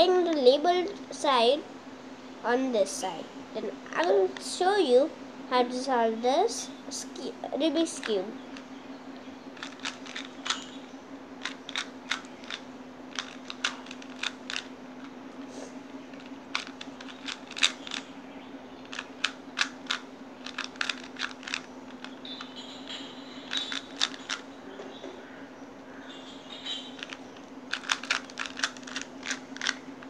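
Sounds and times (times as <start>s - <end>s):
steady low hum: 0.0s - 30.0s
plastic puzzle cube clicks: 18.9s - 22.2s, 23.5s - 24.4s, 27.0s - 29.8s.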